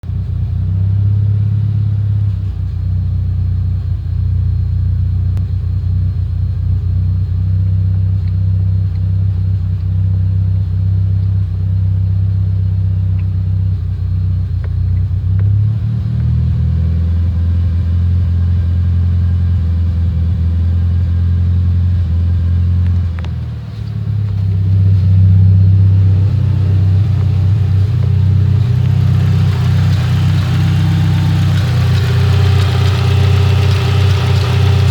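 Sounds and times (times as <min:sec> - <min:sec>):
car engine idling roughly: 0:17.9 - 0:34.9.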